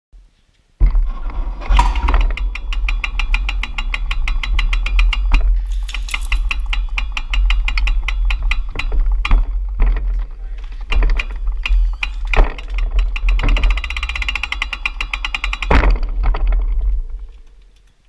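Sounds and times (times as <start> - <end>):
bicycle freewheel ticking: 2.2 - 9.6, 10.8 - 15.7.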